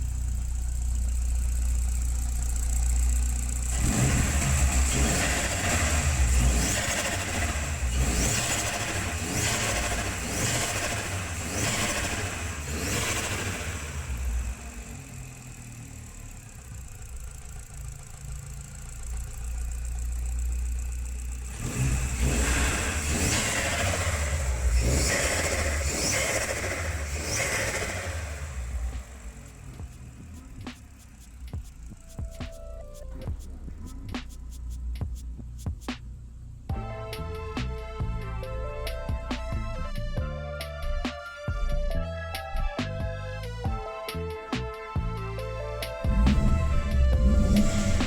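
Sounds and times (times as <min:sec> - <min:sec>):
car engine revving: 0:00.0 - 0:48.0
turbo flutter: 0:45.9 - 0:48.0.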